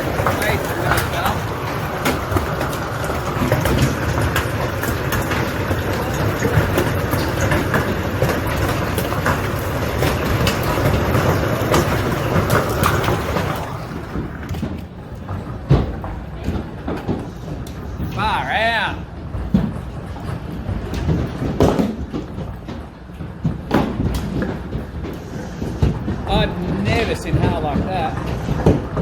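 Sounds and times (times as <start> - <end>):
roar of hail pelting down: 0.0 - 15.6, 23.4 - 29.0
hailstones cracking on hard surfaces: 0.0 - 29.0.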